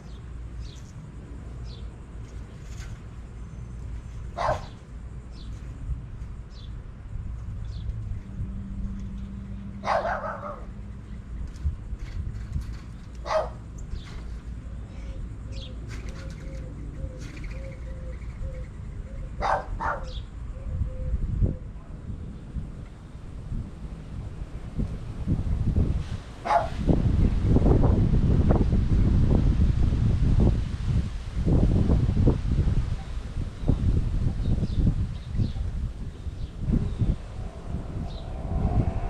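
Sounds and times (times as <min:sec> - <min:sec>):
wind buffeting microphone: 0:01.6 - 0:39.0
dog barking: 0:04.4 - 0:04.8, 0:09.8 - 0:10.7, 0:13.2 - 0:13.6, 0:19.4 - 0:20.2, 0:26.4 - 0:26.8
small birds chirping: 0:13.2 - 0:20.4
steady low rumble: 0:31.1 - 0:39.0.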